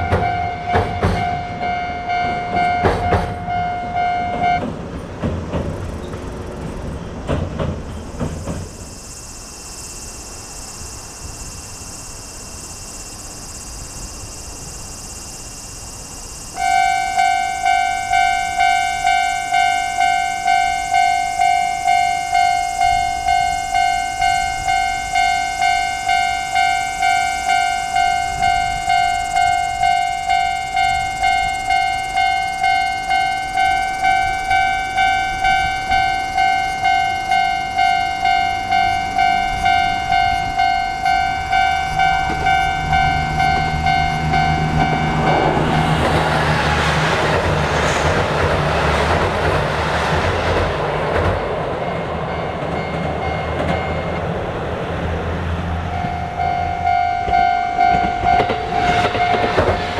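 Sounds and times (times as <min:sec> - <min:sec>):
level crossing warning bell: 0:00.0 - 0:04.6, 0:16.5 - 0:46.4, 0:51.2 - 0:59.9
train engine hum: 0:00.0 - 0:59.9
train passing with rushing rumble: 0:00.0 - 0:59.9.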